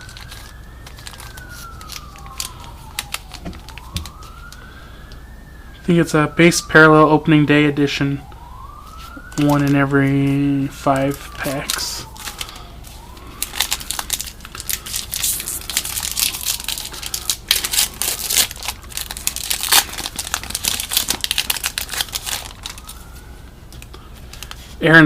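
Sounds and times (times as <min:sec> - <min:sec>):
card pack wrapper tearing and crinkling: 0:00.0 - 0:04.5, 0:09.0 - 0:23.1, 0:23.7 - 0:24.8.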